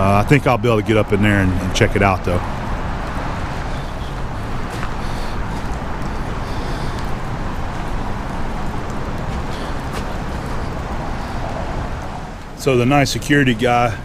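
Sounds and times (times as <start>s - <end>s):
low rumble: 1.6s - 12.4s.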